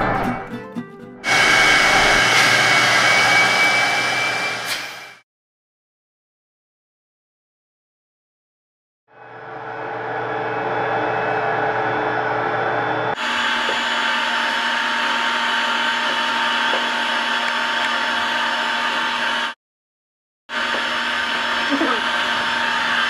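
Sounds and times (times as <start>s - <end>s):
vacuum motor whir: 12.1s - 19.6s, 20.5s - 23.0s.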